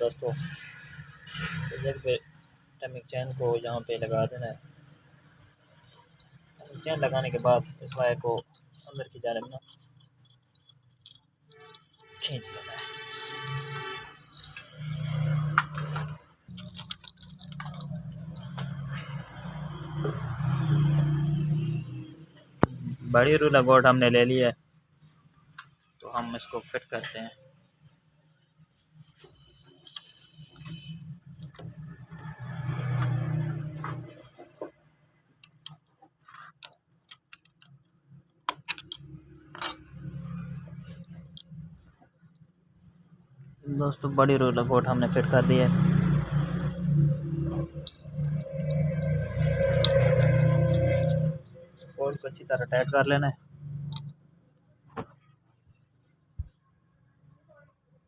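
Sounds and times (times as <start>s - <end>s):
metallic clicks and rattles: 5.7s - 19.4s.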